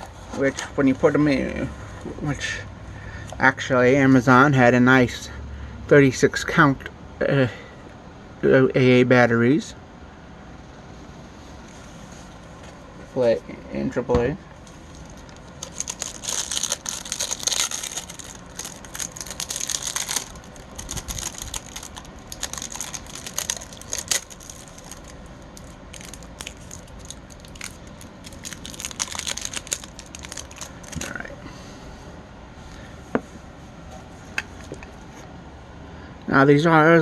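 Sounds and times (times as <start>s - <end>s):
plastic packaging crinkling: 14.6s - 31.3s.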